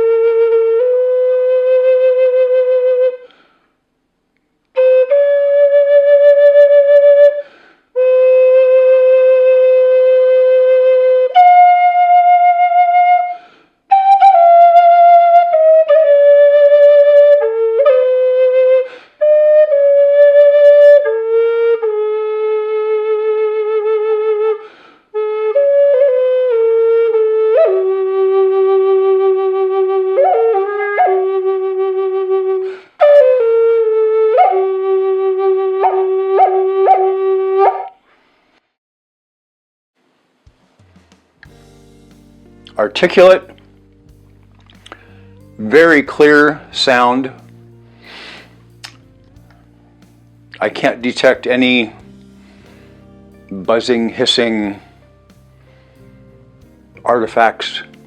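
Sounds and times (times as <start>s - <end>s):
flute playing slow melody: 0.0s - 3.4s, 4.7s - 38.0s, 41.4s - 58.0s
breaths between phrases: 44.8s - 45.6s.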